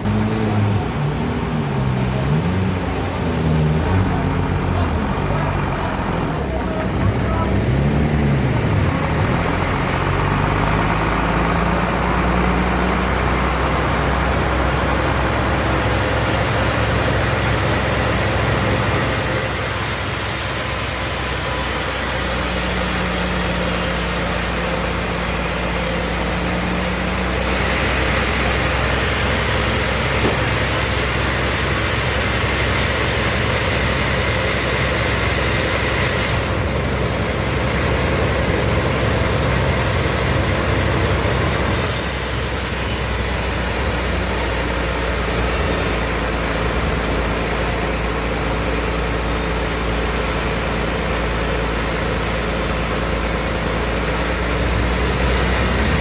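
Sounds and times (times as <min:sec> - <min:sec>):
band saw running: 0:00.0 - 0:56.0.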